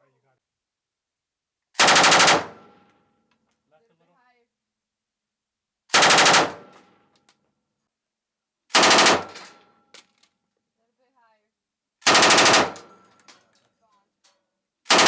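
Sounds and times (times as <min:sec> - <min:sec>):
machine gun bursts: 0:01.8 - 0:02.6, 0:06.0 - 0:06.7, 0:08.8 - 0:09.4, 0:12.0 - 0:13.0.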